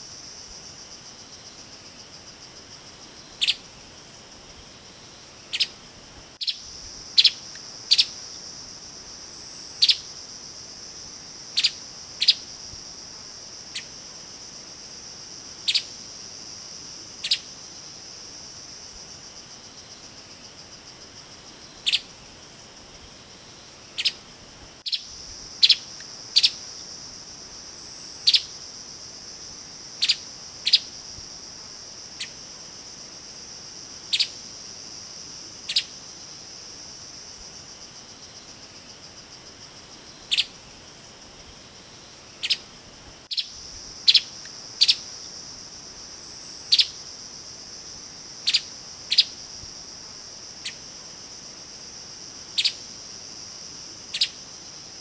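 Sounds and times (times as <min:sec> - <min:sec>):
high-pitched insect drone: 0:46.3 - 0:49.5.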